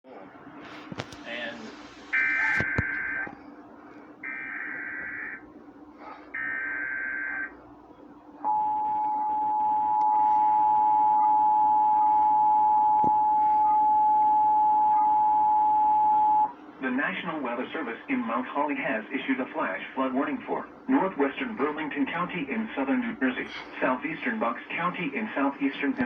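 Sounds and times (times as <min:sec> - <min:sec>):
two-tone attention signal: 0:02.2 - 0:03.3, 0:08.5 - 0:16.5.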